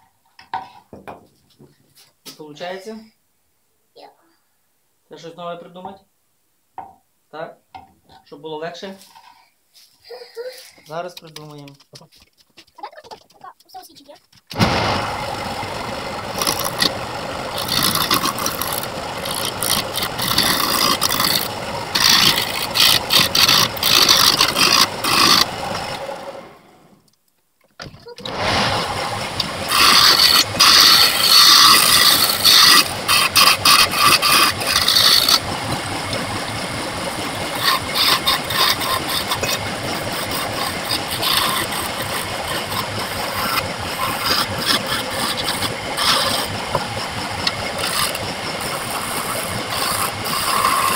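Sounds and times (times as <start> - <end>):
tool scraping spinning wood: 10.9 - 27.0, 28.2 - 50.9
wood lathe running: 14.5 - 27.0, 28.2 - 50.9.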